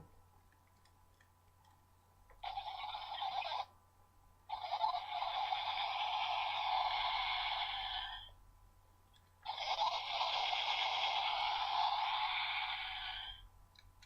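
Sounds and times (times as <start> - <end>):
toy electronic sound effects: 2.4 - 3.7, 4.5 - 8.3, 9.4 - 13.4.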